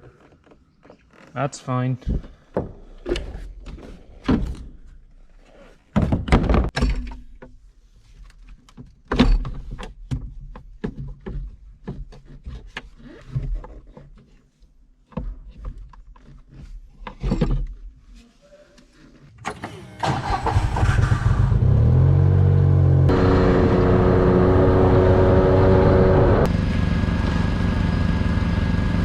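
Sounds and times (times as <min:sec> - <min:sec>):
heavy objects thunking and knocking: 0:06.0 - 0:07.1.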